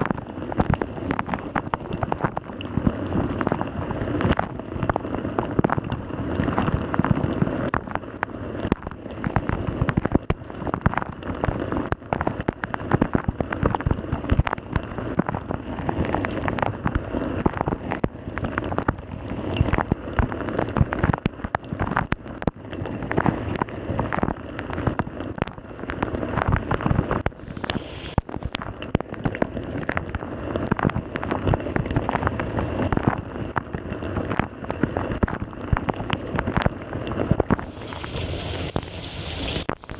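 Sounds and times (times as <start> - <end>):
short high-pitched whine: 27.3 - 28.6, 37.5 - 39.9.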